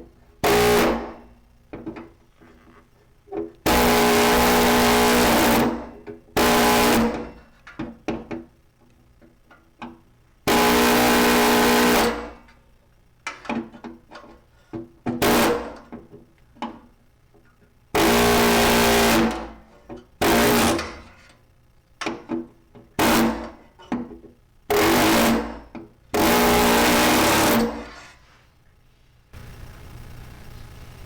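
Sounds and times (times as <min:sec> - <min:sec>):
power tool motor bursts: 0:00.4 - 0:01.2, 0:03.7 - 0:07.3, 0:10.5 - 0:12.4, 0:15.2 - 0:15.8, 0:18.0 - 0:19.6, 0:20.2 - 0:21.1, 0:23.0 - 0:23.6, 0:24.7 - 0:25.6, 0:26.2 - 0:28.0.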